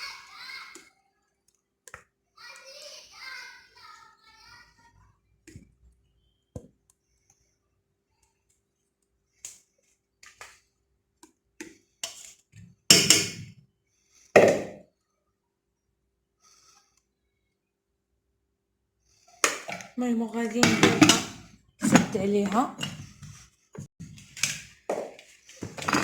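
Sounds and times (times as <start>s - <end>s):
cookware clicks and clinks: 12.9s - 13.5s, 20.6s - 23.1s.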